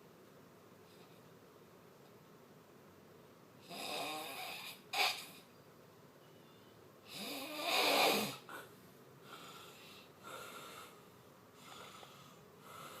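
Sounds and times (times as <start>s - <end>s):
person snoring: 3.6s - 5.3s, 7.1s - 8.7s.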